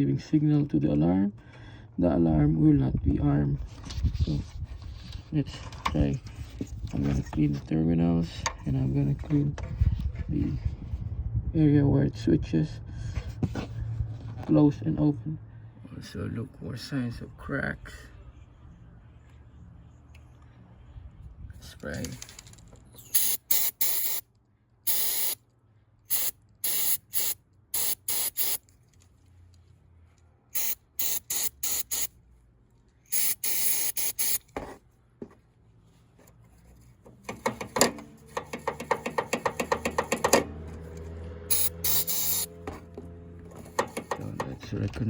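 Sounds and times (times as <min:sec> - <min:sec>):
aerosol spray hissing bursts: 0:23.2 - 0:24.2, 0:24.9 - 0:25.4, 0:26.1 - 0:28.6, 0:30.6 - 0:32.1, 0:33.1 - 0:34.4, 0:41.5 - 0:42.5.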